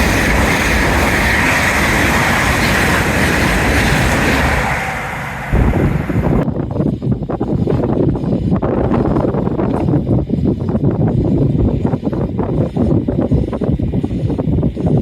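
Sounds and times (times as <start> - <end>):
train rushing past: 0.0 - 6.5
wind buffeting microphone: 0.0 - 15.0.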